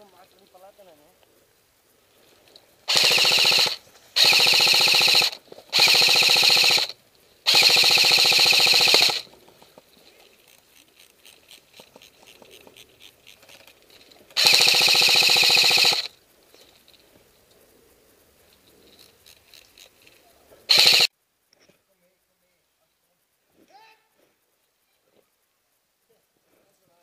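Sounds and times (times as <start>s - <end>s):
airsoft rifle firing bursts: 2.8s - 9.6s, 14.4s - 16.2s, 20.7s - 21.1s
faint ticks: 8.1s - 14.6s, 15.8s - 27.0s.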